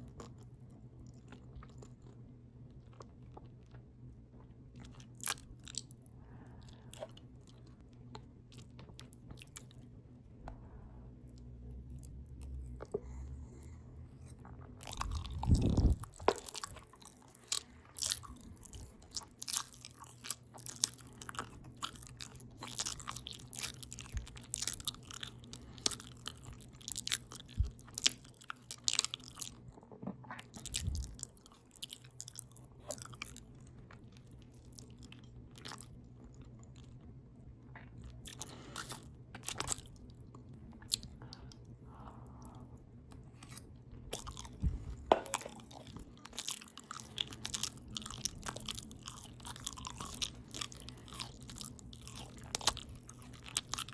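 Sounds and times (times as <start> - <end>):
low rumble: 10.4 - 16.8, 43.9 - 45.2
open-mouth chewing: 11.3 - 53.9.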